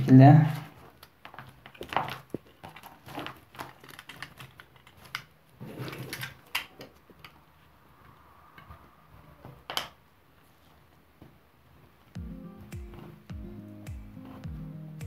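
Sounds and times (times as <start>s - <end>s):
cable cutting clicks and scrapes: 0.7s - 9.9s.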